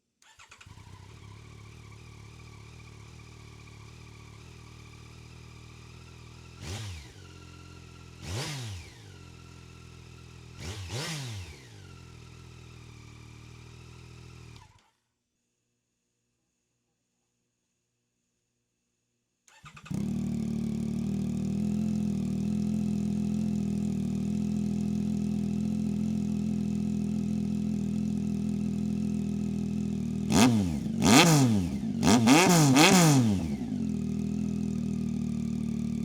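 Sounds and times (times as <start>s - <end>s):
motorcycle engine starting and idling: 0.2s - 14.8s, 19.5s - 36.0s
engine throttle blips: 30.3s - 34.2s.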